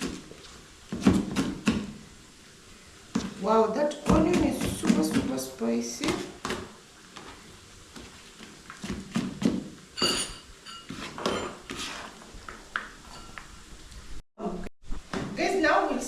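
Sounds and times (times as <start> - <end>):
dish clink: 10.0 - 11.6, 13.1 - 13.6.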